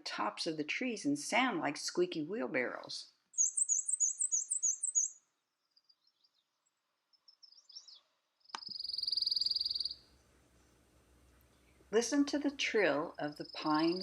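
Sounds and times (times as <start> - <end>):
faint high bird chips: 3.4 - 5.2
rapid high bird trill: 3.4 - 5.2, 8.6 - 10.0.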